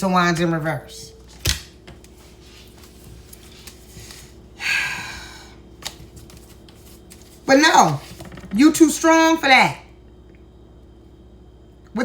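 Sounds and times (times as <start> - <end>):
person exhaling: 4.6 - 5.6.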